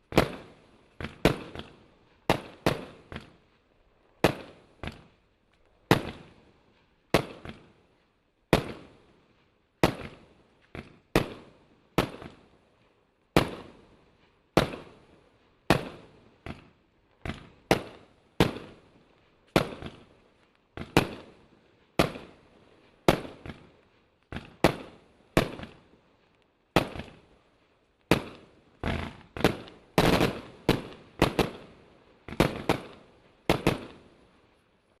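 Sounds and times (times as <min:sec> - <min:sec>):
firework bangs echoing: 0:00.0 - 0:03.4, 0:09.8 - 0:10.2, 0:15.7 - 0:18.8, 0:19.5 - 0:20.1, 0:20.7 - 0:21.4, 0:22.0 - 0:23.7, 0:24.3 - 0:25.8, 0:26.7 - 0:27.3, 0:28.1 - 0:34.1.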